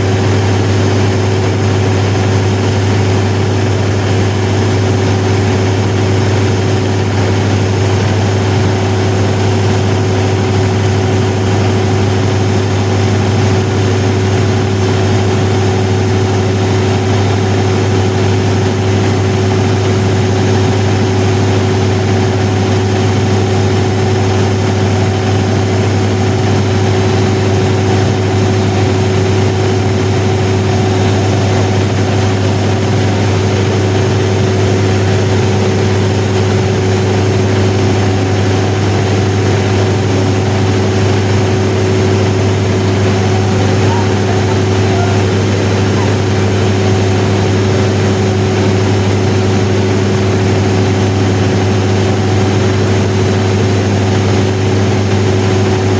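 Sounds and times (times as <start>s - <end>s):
diesel generator droning: 0.0s - 55.9s
steady tone: 42.3s - 47.3s.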